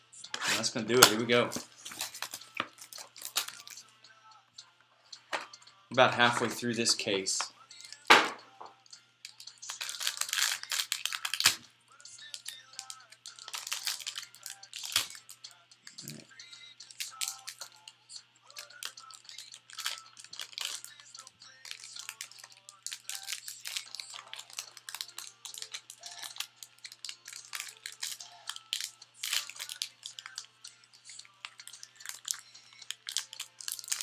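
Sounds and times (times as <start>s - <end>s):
quiet background music: 0.0s - 34.0s
packaging crinkling and crackling: 0.5s - 3.8s, 9.6s - 11.6s, 12.8s - 15.3s, 16.9s - 17.8s, 18.5s - 30.5s, 31.4s - 34.0s.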